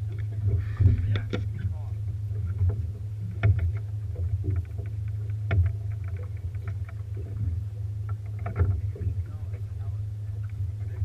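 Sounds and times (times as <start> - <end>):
boat motor humming: 0.0 - 11.0.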